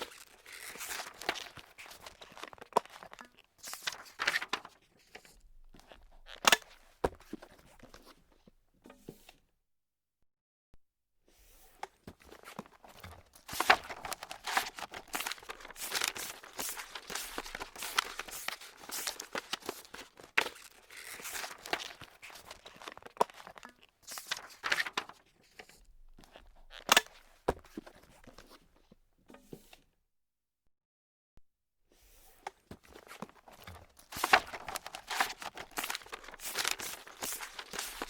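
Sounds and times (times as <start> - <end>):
paper crumpling: 0.0 - 4.7, 12.3 - 25.2, 32.8 - 38.0.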